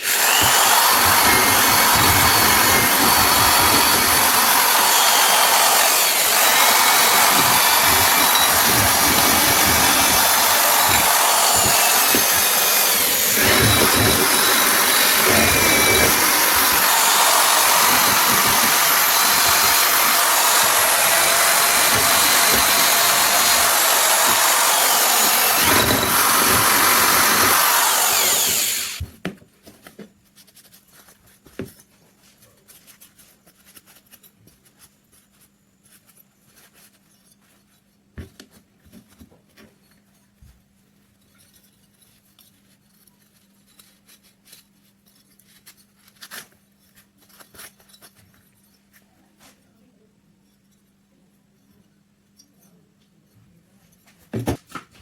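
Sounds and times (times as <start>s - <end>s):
power tool running: 0.0s - 29.0s.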